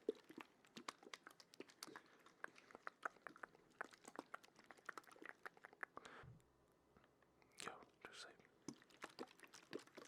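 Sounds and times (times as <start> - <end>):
wet mouth clicks and smacks: 0.0 - 6.1, 8.6 - 10.0.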